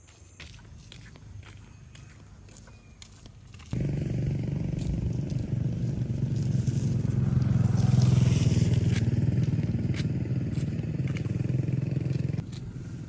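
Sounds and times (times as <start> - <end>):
small engine running: 3.5 - 13.0.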